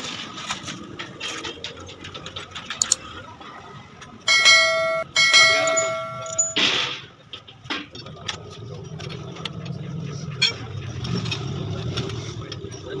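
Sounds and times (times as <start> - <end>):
light clicks and clinks: 2.8 - 3.0, 4.3 - 6.7
bell-like ring: 4.3 - 6.7.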